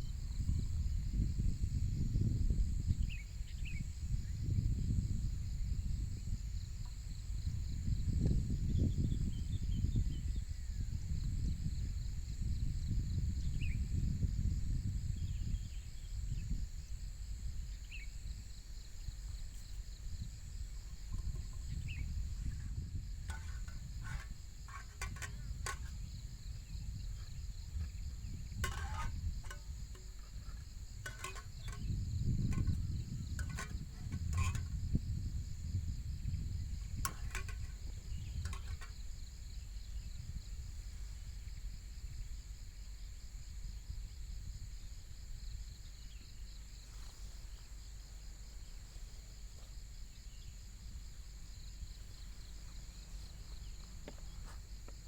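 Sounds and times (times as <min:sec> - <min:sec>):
insect chorus: 0:00.0 - 0:55.0
wind rumble on microphone: 0:00.0 - 0:55.0
sharp clicks and knocks: 0:23.3 - 0:26.0, 0:28.6 - 0:31.9, 0:33.4 - 0:34.7, 0:37.0 - 0:39.0.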